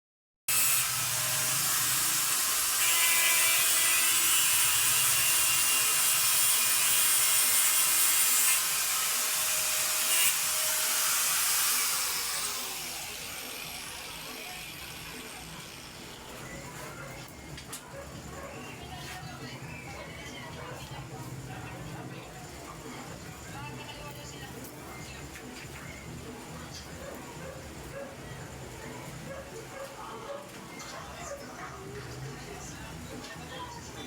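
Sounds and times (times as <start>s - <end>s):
power tool whining: 0.5s - 16.2s.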